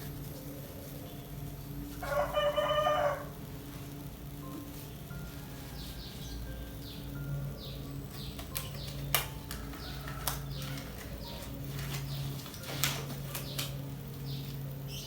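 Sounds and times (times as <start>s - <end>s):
small birds chirping: 4.8s - 15.0s.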